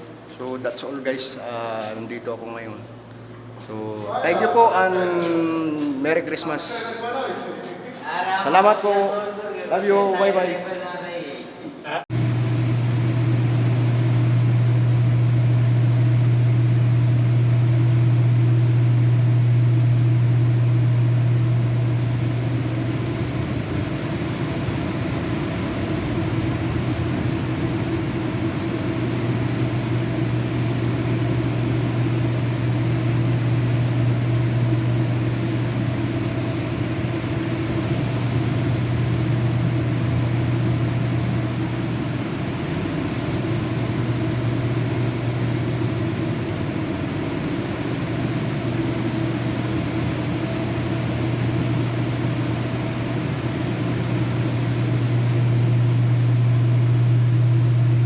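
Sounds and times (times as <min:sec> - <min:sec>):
machine hum: 0:12.1 - 0:58.0.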